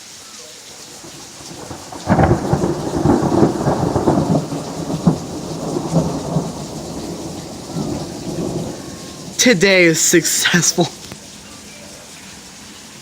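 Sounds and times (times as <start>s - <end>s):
steady rain: 0.0s - 13.0s
thunder crack and rumble: 0.9s - 9.7s.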